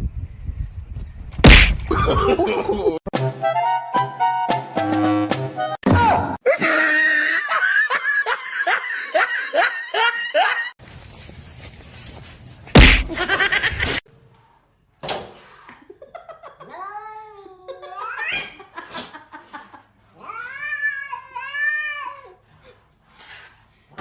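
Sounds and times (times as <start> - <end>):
person laughing: 1.5 - 3.0, 12.8 - 14.0.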